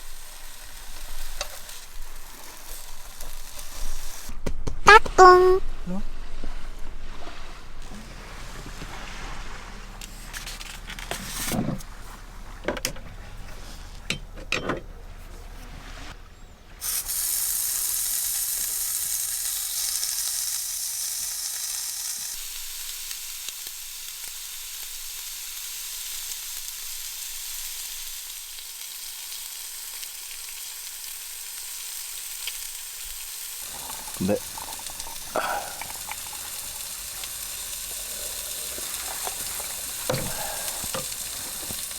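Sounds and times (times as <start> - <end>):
food sizzling in a hot pan: 0.0 - 4.3, 16.8 - 41.9.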